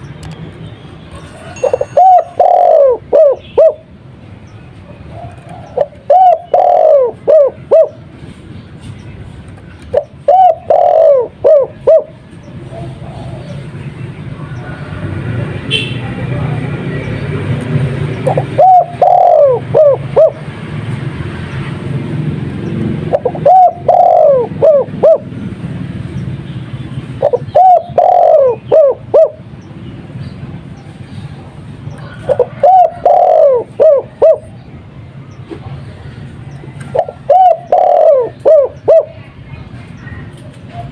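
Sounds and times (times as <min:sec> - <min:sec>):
dove cooing: 0:01.4 - 0:03.9, 0:05.0 - 0:08.1, 0:09.9 - 0:13.8, 0:18.1 - 0:20.5, 0:23.0 - 0:25.3, 0:27.2 - 0:29.5, 0:32.0 - 0:34.6, 0:36.8 - 0:39.3.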